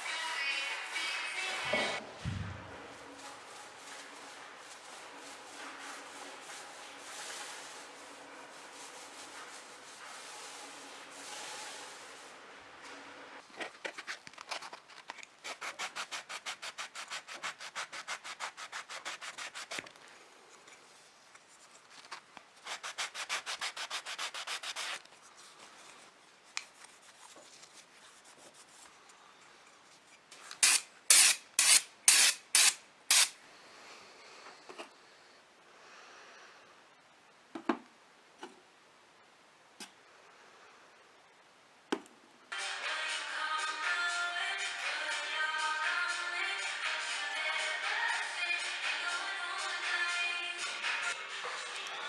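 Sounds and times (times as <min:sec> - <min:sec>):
hand sanding strokes: 0:02.8 - 0:12.6, 0:15.4 - 0:19.9, 0:22.6 - 0:28.9, 0:30.6 - 0:33.4.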